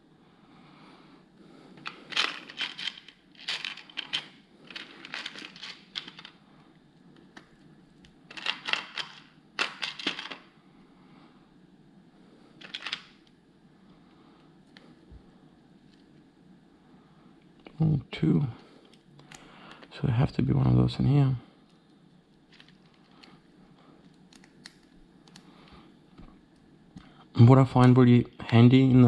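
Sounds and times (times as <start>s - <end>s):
plastic parts rustling and clicking: 1.8s - 6.4s, 8.3s - 10.5s, 12.6s - 13.3s, 21.7s - 23.4s.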